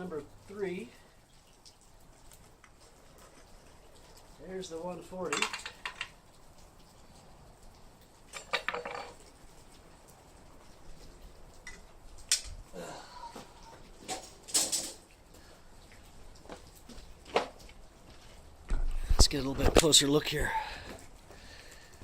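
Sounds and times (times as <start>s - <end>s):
metal clinks and scrapes: 14.0s - 15.0s.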